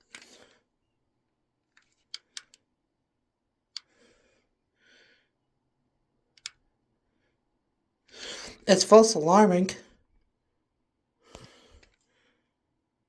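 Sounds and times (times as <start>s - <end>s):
sharp clicks: 6.4s - 6.6s.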